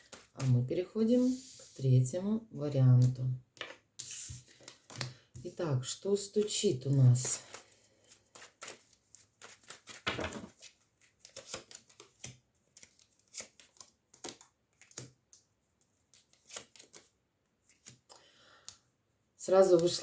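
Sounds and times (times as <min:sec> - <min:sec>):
cards snapping and tapping: 0:11.3 - 0:15.5.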